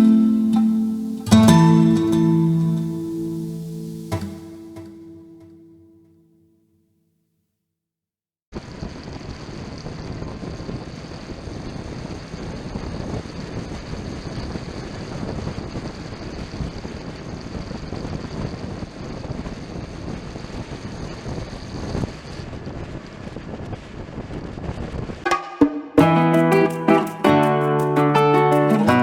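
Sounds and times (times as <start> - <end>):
wind buffeting the microphone: 8.6 - 25.2.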